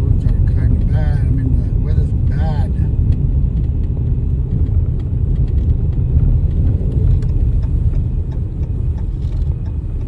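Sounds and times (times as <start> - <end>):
car driving rumble: 0.0 - 10.0
faint ticks: 4.6 - 10.0.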